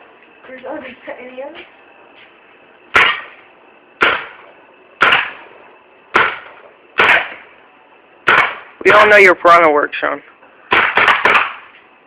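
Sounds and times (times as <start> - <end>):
paintball marker firing: 2.9 - 3.4, 4.0 - 5.5, 6.1 - 7.5, 8.2 - 8.7, 10.7 - 11.8.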